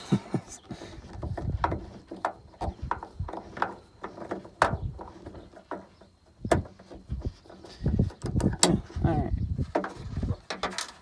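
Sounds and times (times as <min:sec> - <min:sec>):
hand tools clicking and knocking: 0:09.6 - 0:11.0.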